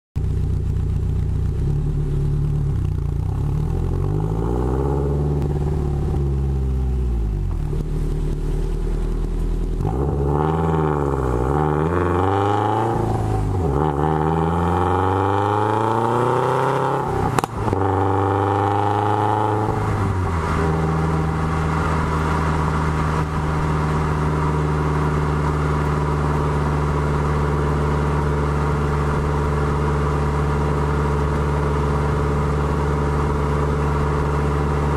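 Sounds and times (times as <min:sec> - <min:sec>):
car engine idling and revving: 0:00.2 - 0:34.9
exhaust pop: 0:17.2 - 0:18.1.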